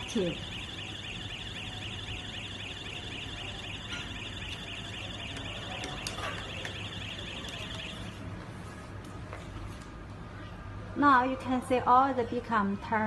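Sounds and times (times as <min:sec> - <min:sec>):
fire alarm warble: 0:00.0 - 0:08.3.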